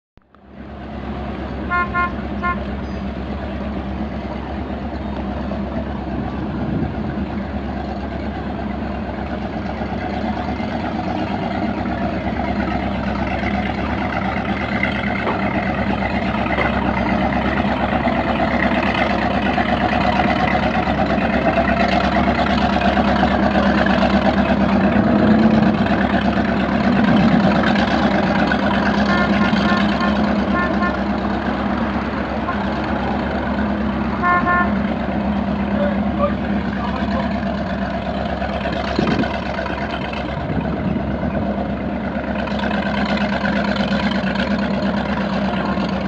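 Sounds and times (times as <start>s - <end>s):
motorboat engines running: 0.2s - 46.0s.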